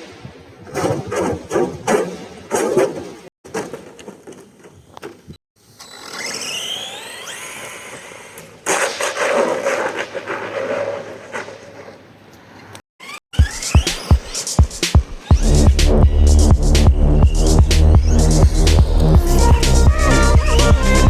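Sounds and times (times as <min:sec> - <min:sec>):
electric motor whining: 0:05.8 - 0:08.4, 0:15.4 - 0:21.0
rc car scraping and rattling: 0:05.8 - 0:12.0.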